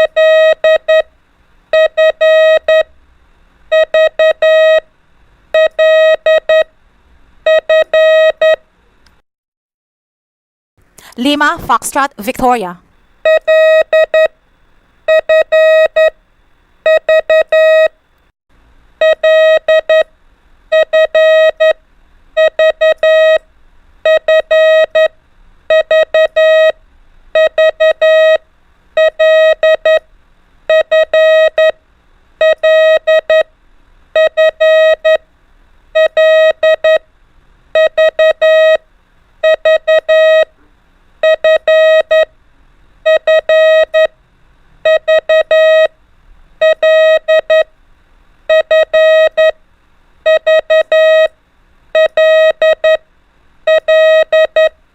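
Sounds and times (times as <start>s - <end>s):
morse code beeping tone: 0.0s - 1.1s, 1.8s - 2.9s, 3.7s - 4.8s, 5.6s - 6.7s, 7.5s - 8.6s, 13.3s - 14.3s, 15.1s - 16.2s, 16.9s - 17.9s, 19.0s - 20.1s, 20.7s - 21.8s, 22.4s - 23.4s, 24.1s - 25.1s, 25.7s - 26.8s, 27.4s - 28.4s, 29.0s - 30.0s, 30.7s - 31.8s, 32.4s - 33.5s, 34.2s - 35.2s, 36.0s - 37.0s, 37.8s - 38.8s, 39.4s - 40.5s, 41.2s - 42.3s, 43.1s - 44.1s, 44.9s - 45.9s, 46.6s - 47.7s, 48.5s - 49.6s, 50.3s - 51.3s, 52.0s - 53.0s, 53.7s - 54.7s.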